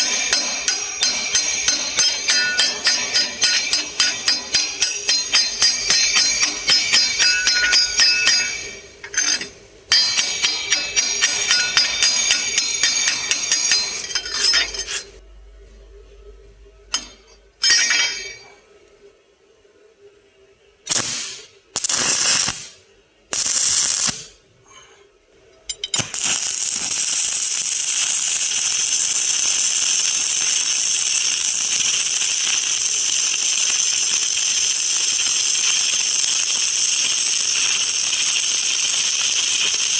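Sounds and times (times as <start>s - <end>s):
welding arc crackling: 0.0s - 15.2s, 20.9s - 24.3s, 26.0s - 39.9s.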